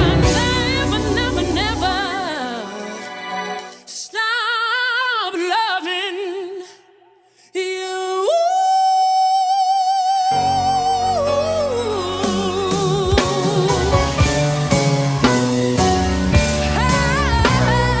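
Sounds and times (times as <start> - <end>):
backing band: 0.0 - 3.2, 12.2 - 18.0
woman singing: 0.0 - 14.5, 16.6 - 18.0.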